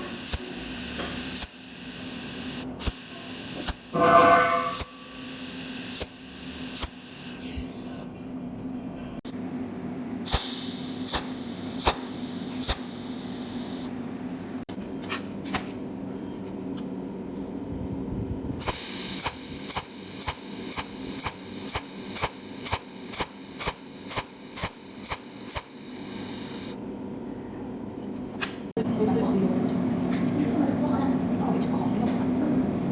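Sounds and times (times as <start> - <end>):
welding machine snaps: 3.6 - 4.9, 10.3 - 13.0, 18.6 - 25.8.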